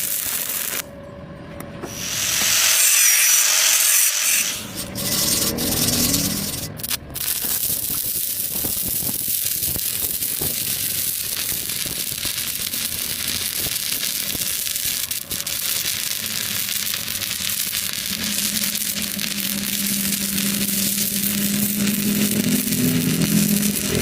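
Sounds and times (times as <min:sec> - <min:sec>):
welding arc crackling: 0:00.0 - 0:00.9, 0:01.9 - 0:24.0.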